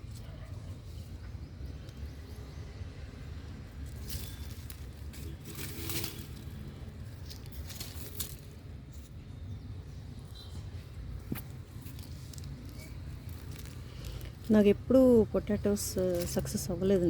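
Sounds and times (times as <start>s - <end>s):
hands digging through soil: 3.7s - 9.4s, 11.1s - 16.8s.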